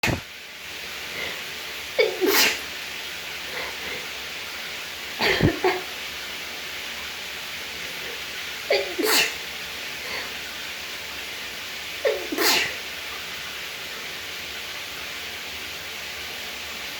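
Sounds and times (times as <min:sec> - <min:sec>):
woman sneezing: 0:02.0 - 0:02.6, 0:08.7 - 0:09.4, 0:12.1 - 0:12.8.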